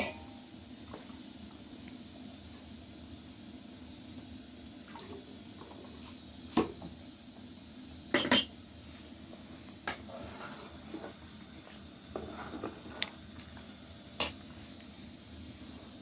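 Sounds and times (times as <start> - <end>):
faint steady background noise: 0.0 - 16.0.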